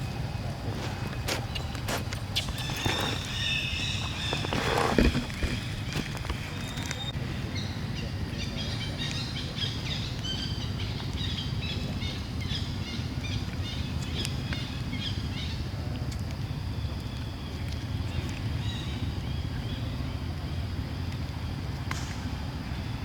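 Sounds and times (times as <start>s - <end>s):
small birds chirping: 0.0s - 15.8s.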